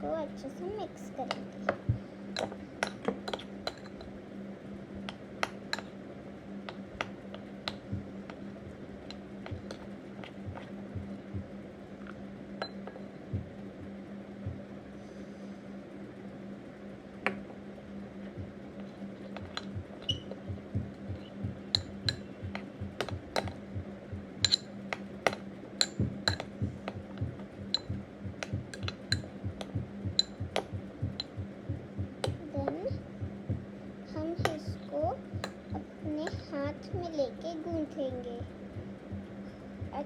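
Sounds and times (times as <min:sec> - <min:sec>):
steady low hum: 0:00.0 - 0:40.0
spoon stirring in a bowl: 0:24.4 - 0:24.7.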